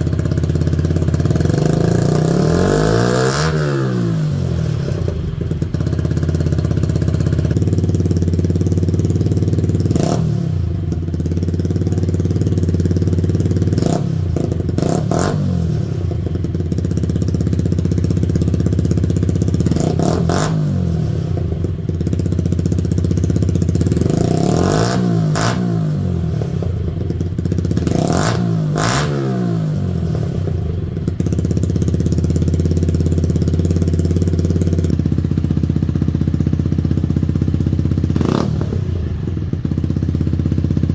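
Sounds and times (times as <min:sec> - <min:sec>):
motorcycle engine idling: 0:00.0 - 0:40.9
engine throttle revs: 0:24.0 - 0:26.8, 0:27.8 - 0:30.7, 0:38.1 - 0:39.2.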